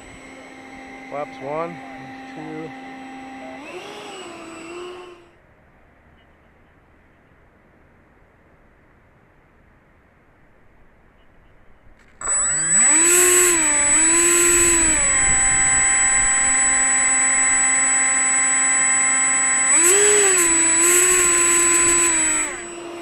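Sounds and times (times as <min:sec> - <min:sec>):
electric ducted fan whine: 0:00.0 - 0:05.4, 0:12.0 - 0:23.0.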